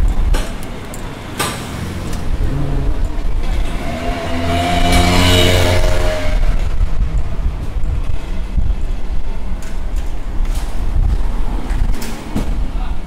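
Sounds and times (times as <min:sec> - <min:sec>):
vehicle passing by: 0:01.5 - 0:08.6.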